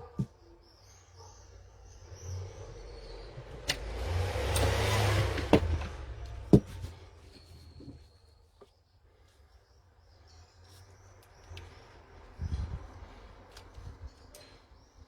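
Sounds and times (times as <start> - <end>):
fan airflow buffeting microphone: 11.6 - 14.3.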